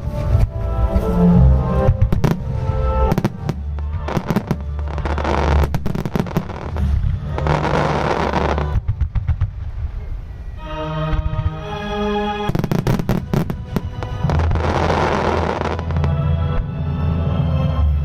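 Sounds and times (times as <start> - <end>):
music soundtrack: 0.0 - 18.0
fireworks crackling: 1.8 - 10.6, 12.5 - 16.2
fireworks bursting: 1.8 - 11.6, 12.4 - 16.2.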